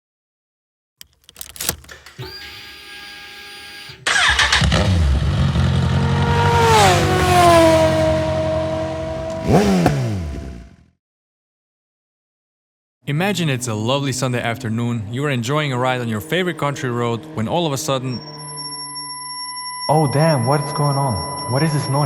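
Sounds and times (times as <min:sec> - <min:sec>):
starter clicks: 0:01.0 - 0:02.4
motorcycle engine starting and running: 0:04.0 - 0:11.0, 0:15.3 - 0:22.0
short steady whine: 0:17.5 - 0:22.0.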